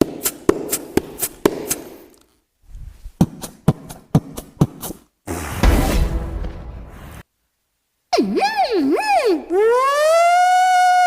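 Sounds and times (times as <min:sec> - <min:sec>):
noisy burst: 0:05.3 - 0:07.7.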